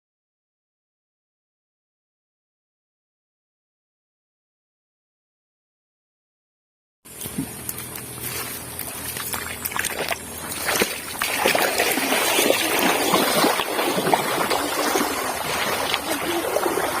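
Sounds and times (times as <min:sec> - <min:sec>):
water splashing and trickling: 0:07.1 - 0:17.0.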